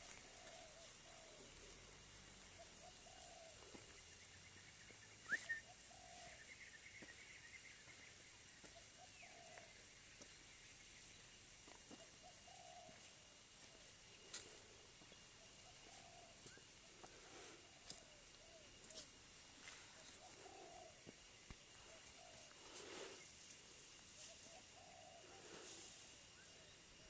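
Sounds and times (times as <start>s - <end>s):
faint dove cooing: 0.0s - 4.1s, 5.2s - 6.7s, 8.6s - 9.9s, 11.9s - 23.3s, 24.1s - 27.0s.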